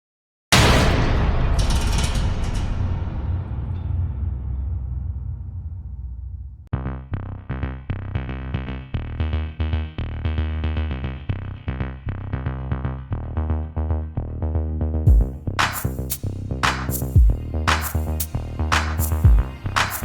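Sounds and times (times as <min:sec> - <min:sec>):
drum machine beat: 0:15.1 - 0:20.0.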